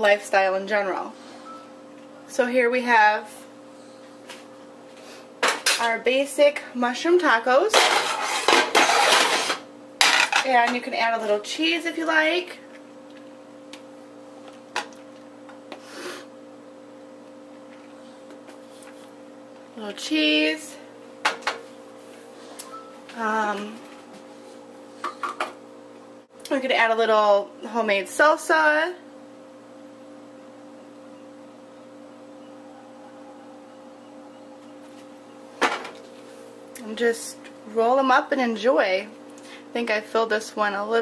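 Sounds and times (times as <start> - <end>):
steady electrical hum: 0.0 - 41.0.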